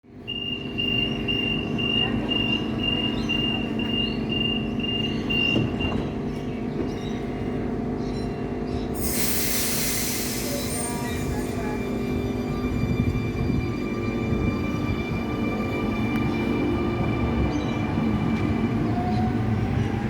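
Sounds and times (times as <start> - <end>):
electric train humming: 0.1 - 20.0
high-pitched warning beep: 0.2 - 6.1
loud hiss: 9.0 - 11.4.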